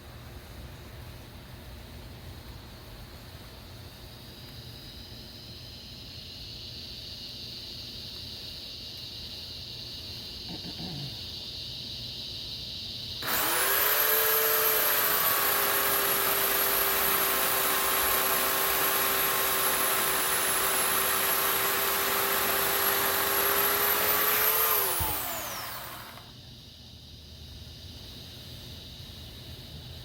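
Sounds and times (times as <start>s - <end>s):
chainsaw motor winding down: 13.2s - 26.4s
electric chainsaw cutting branch: 13.2s - 26.4s.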